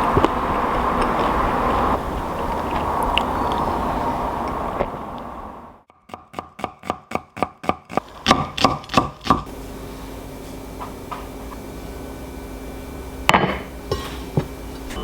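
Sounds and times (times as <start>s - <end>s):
steady background hum: 0.0s - 5.9s, 8.0s - 15.0s
knife chopping on cutting board: 6.1s - 9.5s.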